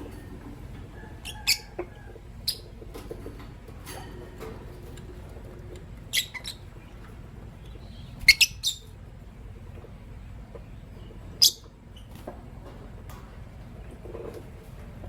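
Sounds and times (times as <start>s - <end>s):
lovebirds chirping: 6.1s - 9.0s, 10.1s - 12.2s.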